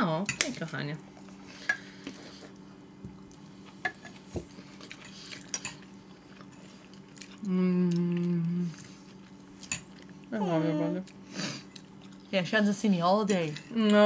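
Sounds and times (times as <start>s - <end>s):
person humming: 7.4s - 8.8s, 10.3s - 11.1s.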